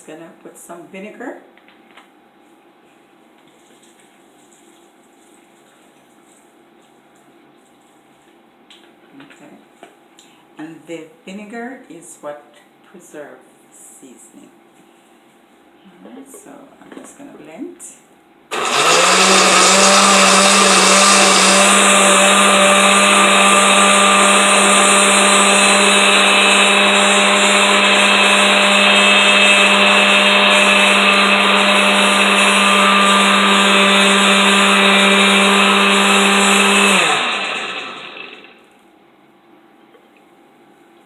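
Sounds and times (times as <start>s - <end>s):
blender motor running: 18.5s - 38.7s.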